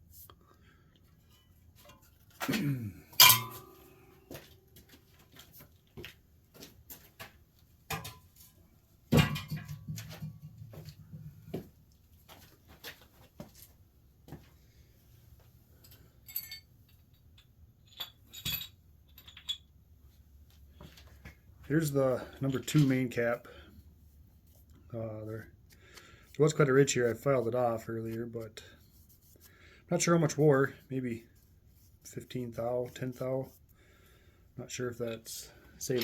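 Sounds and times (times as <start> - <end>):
metal parts clinking and knocking: 3.1 - 4.0, 15.8 - 19.8.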